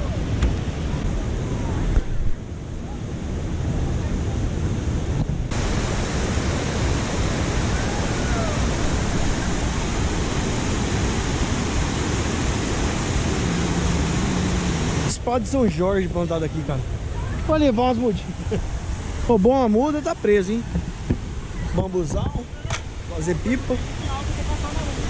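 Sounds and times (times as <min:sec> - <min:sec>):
wind buffeting microphone: 0:00.0 - 0:15.1
river water rushing over rapids: 0:05.5 - 0:25.0.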